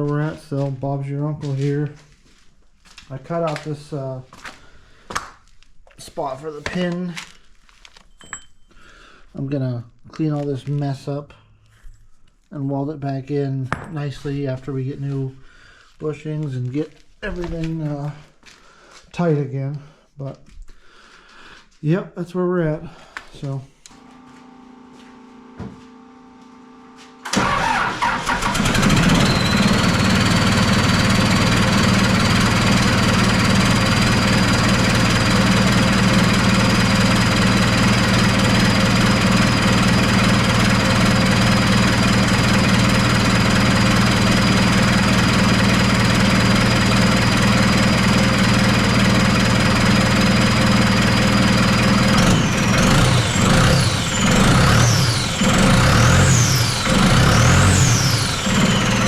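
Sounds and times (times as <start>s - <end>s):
diesel engine starting and running: 23.9s - 59.0s
high engine whine: 23.9s - 59.0s.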